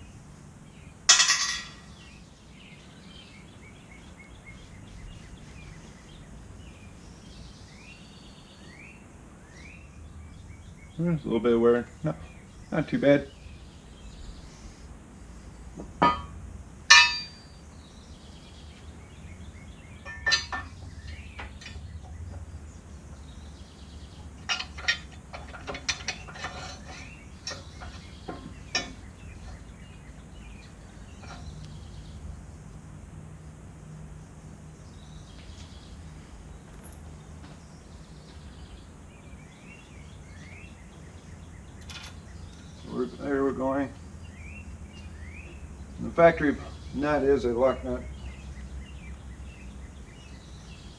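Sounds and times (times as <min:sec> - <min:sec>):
metal tools clinking and clanking: 0:01.1 - 0:02.0, 0:16.0 - 0:17.5, 0:20.0 - 0:22.4, 0:24.4 - 0:29.7, 0:31.2 - 0:31.6, 0:41.8 - 0:42.7.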